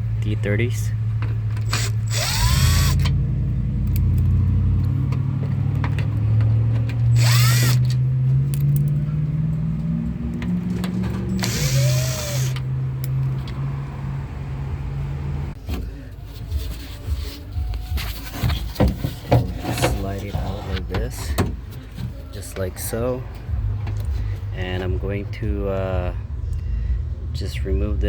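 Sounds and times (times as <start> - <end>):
power drill motor whirring: 1.6 - 3.2, 7.1 - 8.0, 11.2 - 12.7.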